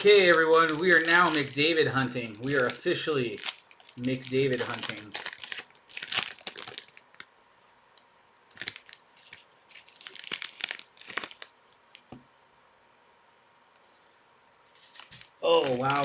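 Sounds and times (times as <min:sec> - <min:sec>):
wrapper tearing and crinkling: 0:00.0 - 0:07.3, 0:08.5 - 0:11.6, 0:14.7 - 0:16.0.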